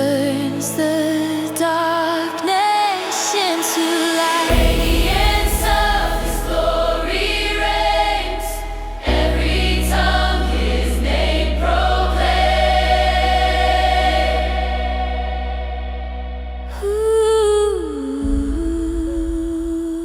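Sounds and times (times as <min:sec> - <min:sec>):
choir-like vocal pads: 0:00.0 - 0:20.0
electronic dance music: 0:01.6 - 0:08.5
heavy bass: 0:04.5 - 0:20.0.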